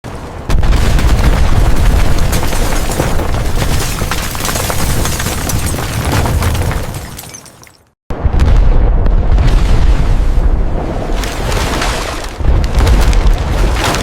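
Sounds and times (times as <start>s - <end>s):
explosion boom: 8.1s - 10.9s
rumble with crackling: 8.1s - 14.0s.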